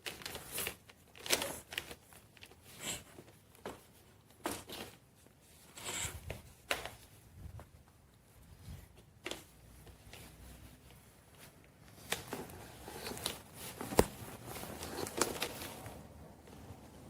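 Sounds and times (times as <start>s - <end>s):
faint background noise: 0.0s - 17.0s.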